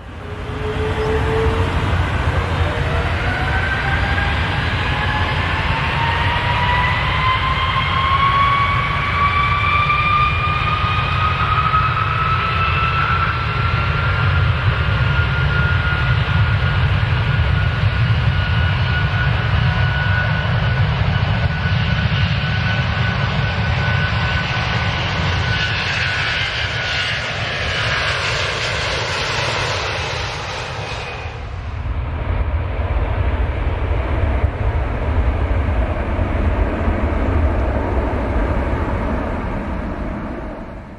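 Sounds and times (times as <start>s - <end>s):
deep engine rumble: 0.0s - 6.0s, 27.2s - 40.9s
jet engines whining: 0.0s - 40.9s.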